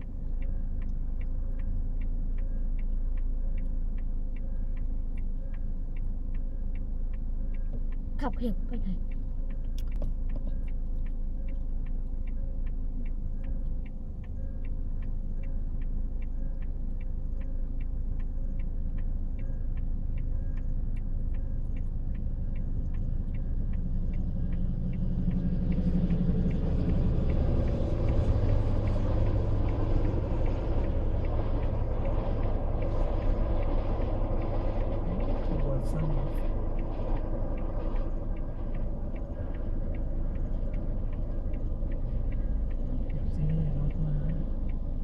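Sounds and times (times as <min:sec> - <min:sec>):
passing train rumble: 0:21.0 - 0:45.0.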